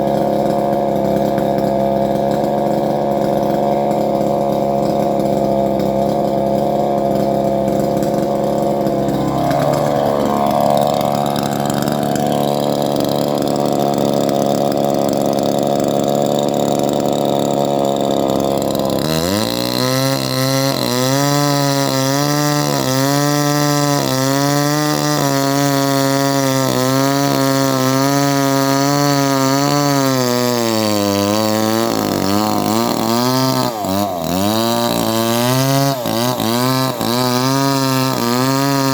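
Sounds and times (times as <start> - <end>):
chainsaw engine running: 0.0 - 38.9.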